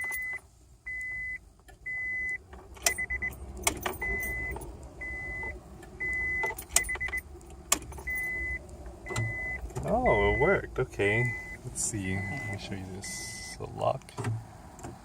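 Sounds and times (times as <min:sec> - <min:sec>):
ignition key clicks: 0:00.0 - 0:04.8, 0:05.4 - 0:09.9
car warning chime beeping: 0:00.0 - 0:13.6.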